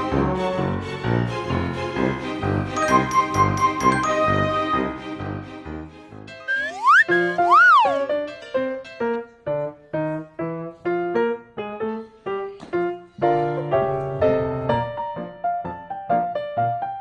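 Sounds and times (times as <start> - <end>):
light piano tune: 6.3 - 17.0.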